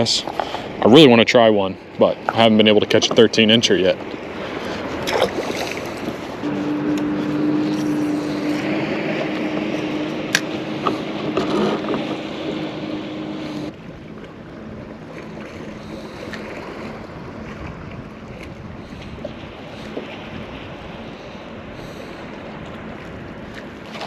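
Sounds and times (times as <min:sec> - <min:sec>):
water noise: 0:00.0 - 0:24.0
wind: 0:00.0 - 0:24.0
small motor humming: 0:06.4 - 0:13.7.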